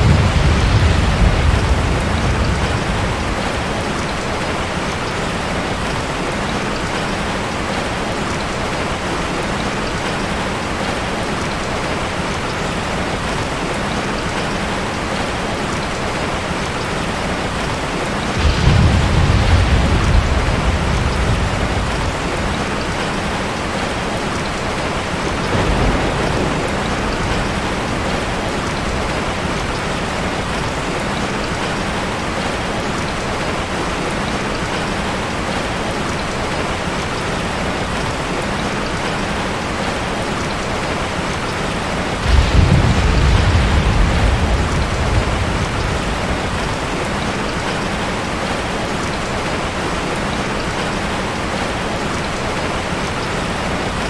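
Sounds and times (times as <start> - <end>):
loud thunderclap: 0.0 - 5.9, 18.2 - 24.0, 24.9 - 30.6, 42.1 - 48.1
thunder rumbling: 0.0 - 7.8, 17.6 - 31.7, 41.5 - 48.7
heavy rain falling: 0.0 - 54.0.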